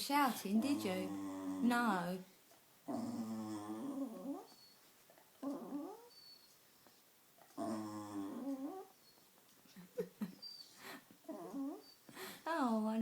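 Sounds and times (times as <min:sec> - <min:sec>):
dog whining: 0:02.9 - 0:06.6, 0:07.5 - 0:09.3, 0:10.3 - 0:12.1.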